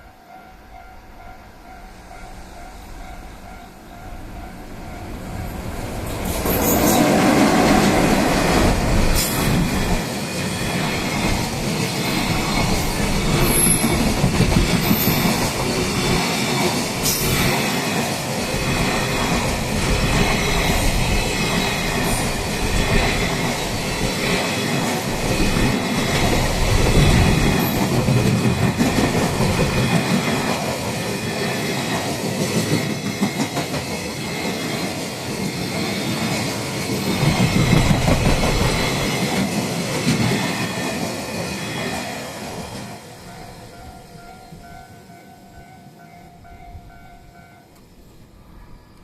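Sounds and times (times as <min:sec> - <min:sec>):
train wheels clattering over rail joints: 0:37.0 - 0:41.1.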